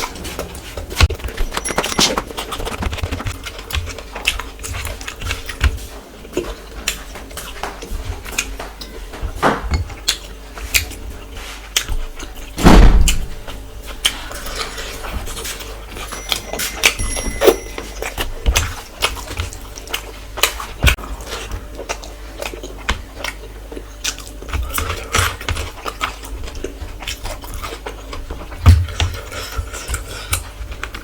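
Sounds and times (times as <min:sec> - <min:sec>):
deep thump: 0:12.6 - 0:13.3.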